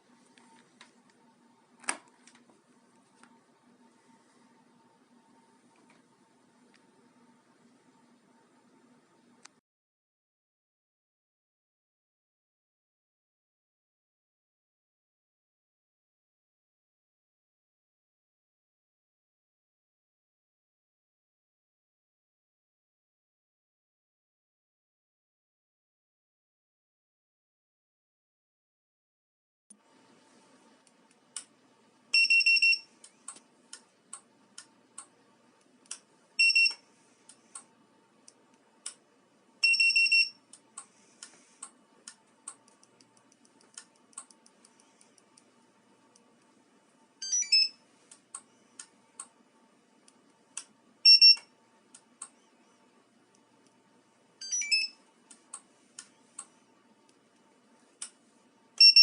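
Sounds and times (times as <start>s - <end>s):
key fob buzzer beeps: 32.2s - 32.9s, 36.4s - 36.8s, 39.6s - 40.4s, 47.2s - 47.8s, 51.0s - 51.4s, 54.4s - 55.0s, 58.8s - 59.0s
sharp clicks: 40.5s - 45.5s.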